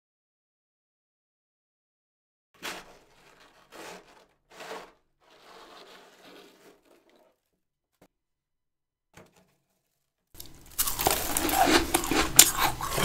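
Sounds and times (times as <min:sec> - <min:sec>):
frost crunching and scraping: 0:02.6 - 0:07.6, 0:09.4 - 0:13.0.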